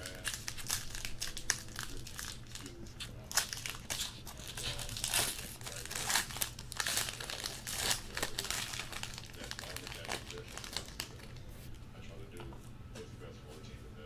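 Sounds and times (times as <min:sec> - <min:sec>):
wrapper being torn and crinkled: 0:00.0 - 0:11.4.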